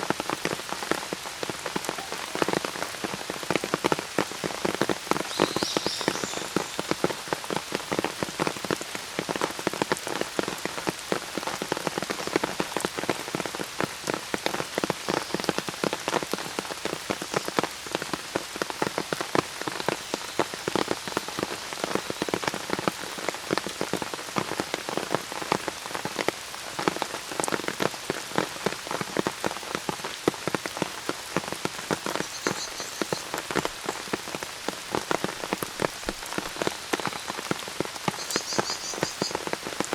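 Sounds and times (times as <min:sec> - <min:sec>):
raindrops hitting: 0:00.0 - 0:39.9
bird chirping: 0:38.2 - 0:39.3.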